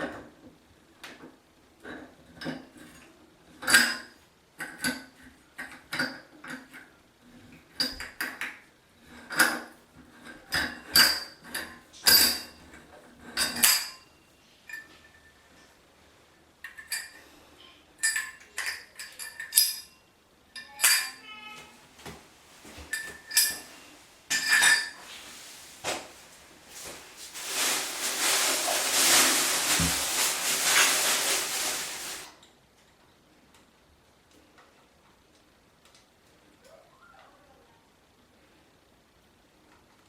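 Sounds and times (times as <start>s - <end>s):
tool clinking on metal fittings: 18.0s - 20.0s, 22.9s - 23.7s, 24.3s - 25.0s.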